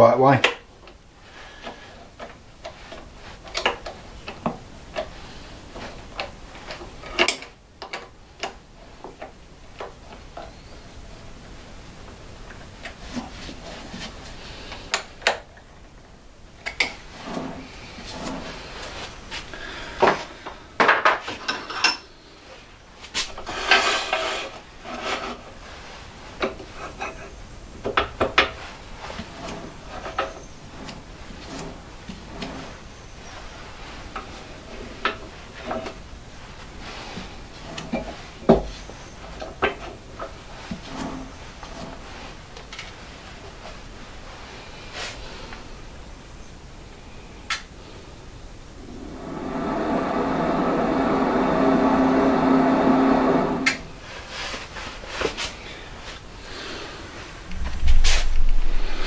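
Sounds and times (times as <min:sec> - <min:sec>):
scraping and rubbing: 0:17.0 - 0:20.4, 0:22.5 - 0:45.5, 0:48.7 - 0:59.0.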